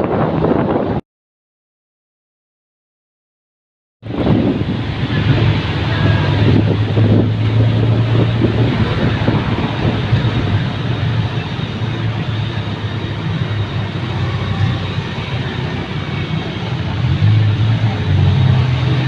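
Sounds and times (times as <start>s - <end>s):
fire pump engine droning: 4.0s - 19.0s.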